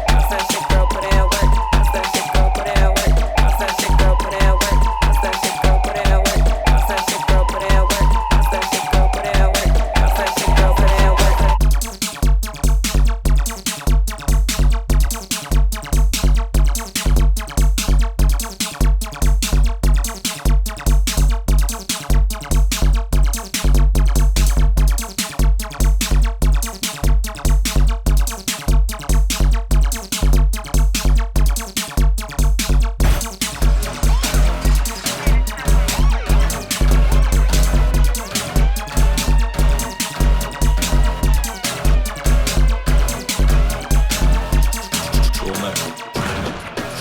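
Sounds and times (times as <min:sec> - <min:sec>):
steady synthesizer tone: 0:00.0 - 0:11.6, 0:33.0 - 0:46.2
deep pulsing bass kicks: 0:00.0 - 0:15.2, 0:32.3 - 0:46.1
crisp electronic percussion: 0:00.0 - 0:46.2.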